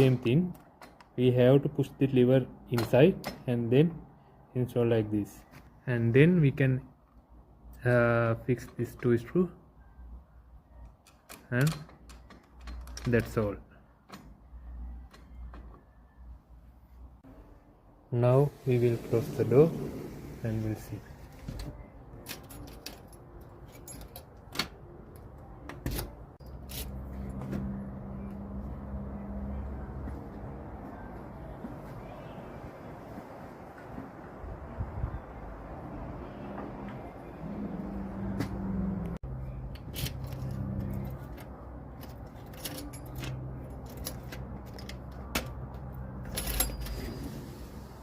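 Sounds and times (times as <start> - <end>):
key clicking and rattling in lock: 10.9 - 13.4, 22.2 - 26.9.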